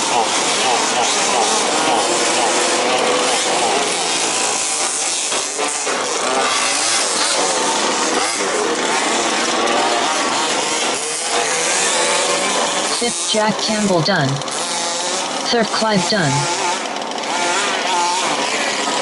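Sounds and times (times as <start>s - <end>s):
small two-stroke engines revving: 0.0s - 13.3s, 14.4s - 19.0s.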